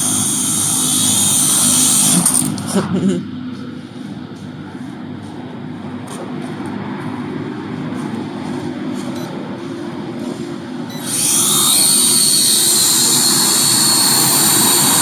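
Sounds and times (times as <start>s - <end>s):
drone propellers whining: 10.8s - 15.0s.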